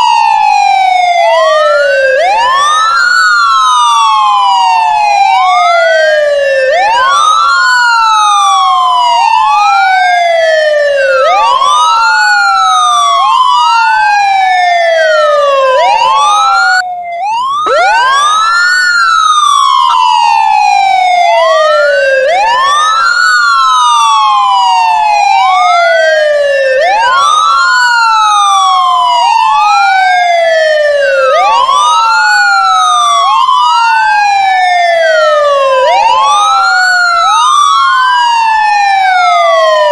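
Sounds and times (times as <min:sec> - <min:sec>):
ambulance siren wailing: 0:00.0 - 0:39.9.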